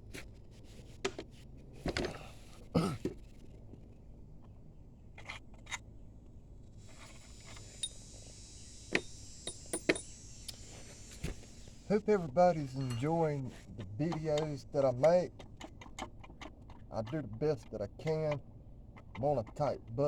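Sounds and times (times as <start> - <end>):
hand tools clinking on metal: 9.5 - 10.2, 12.0 - 15.2.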